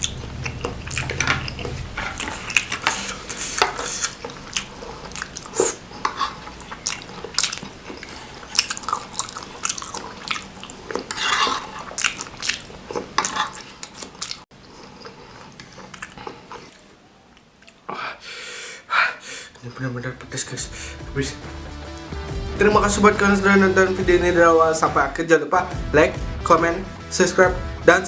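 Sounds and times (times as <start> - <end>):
wet mouth clicks: 0.0 - 5.8, 6.5 - 11.1, 15.5 - 17.9
chewing and biting food: 0.0 - 17.8.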